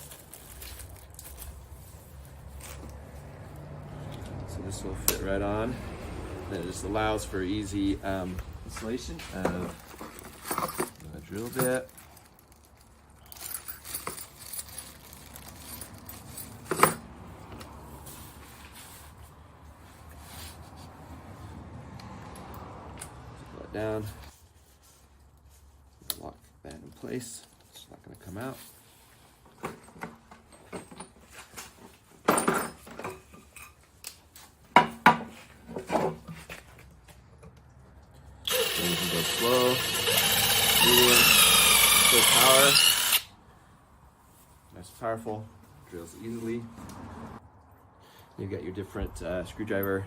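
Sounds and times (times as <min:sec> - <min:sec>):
drill parts clicking and clinking: 0:09.2 - 0:12.2, 0:38.4 - 0:43.3.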